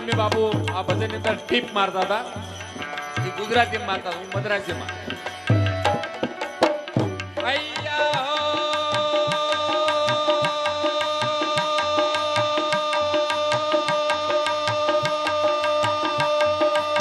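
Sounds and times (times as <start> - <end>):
hand drums playing quick beat: 5.0 - 10.6.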